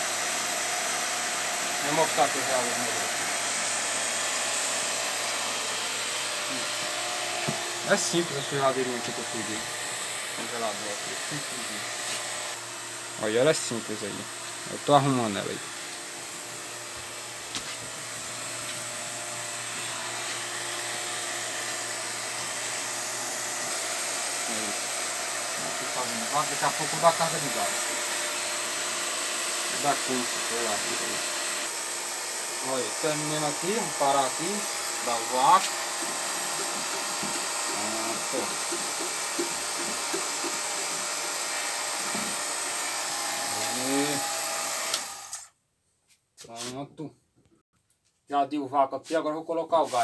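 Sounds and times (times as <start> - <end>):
vacuum pump humming and hissing: 0.0 - 45.5.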